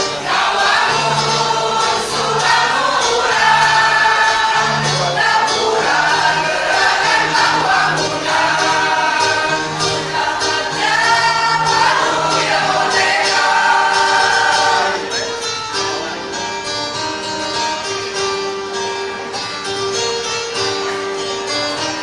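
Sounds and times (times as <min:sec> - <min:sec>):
choir singing: 0:00.0 - 0:15.2
instrumental accompaniment: 0:00.0 - 0:22.0.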